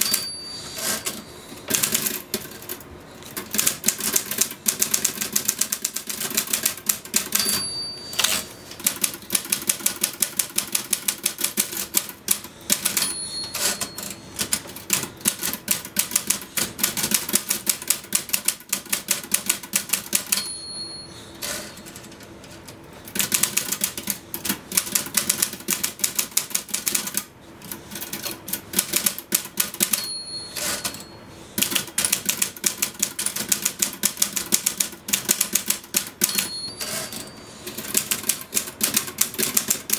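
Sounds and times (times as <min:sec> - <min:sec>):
typewriter bell dinging: 0:00.0 - 0:01.8, 0:07.1 - 0:09.0, 0:12.7 - 0:14.5, 0:20.1 - 0:22.1, 0:29.6 - 0:31.2, 0:36.0 - 0:37.6
typewriter keys striking: 0:01.0 - 0:20.5, 0:23.1 - 0:31.0, 0:31.6 - 0:39.9.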